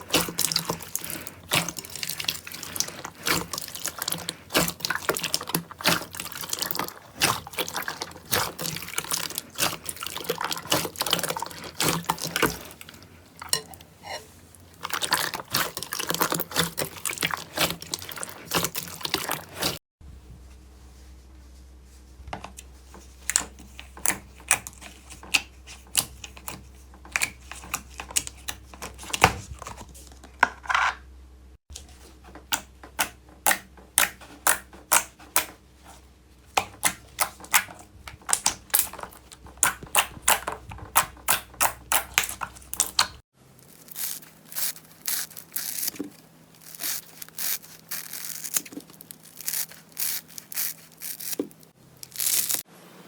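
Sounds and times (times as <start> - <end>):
slime crackling and popping: 36.8 - 52.6.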